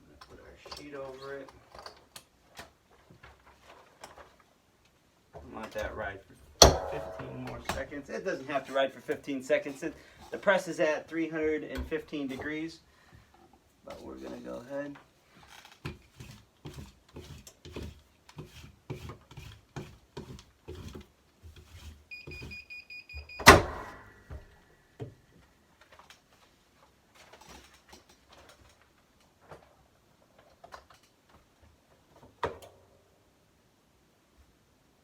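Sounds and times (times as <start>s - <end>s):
heat press opening clunk: 6.6s - 7.8s, 23.4s - 24.1s.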